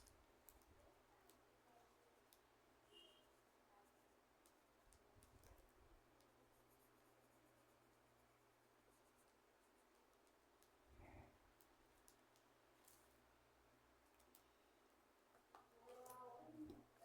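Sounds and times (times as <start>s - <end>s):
faint clicks: 14.0s - 17.0s.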